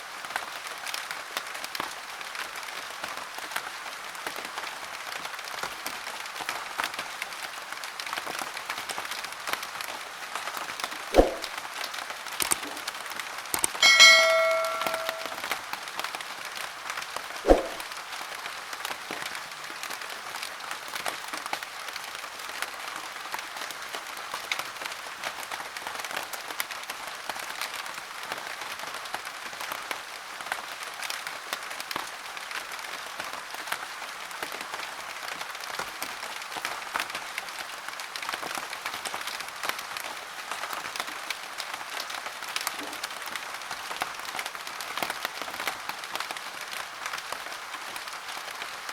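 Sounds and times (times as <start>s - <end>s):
rain pattering: 0.0s - 13.8s, 15.4s - 48.9s
sharp knock: 11.2s - 11.5s, 13.8s - 15.4s, 17.5s - 17.8s.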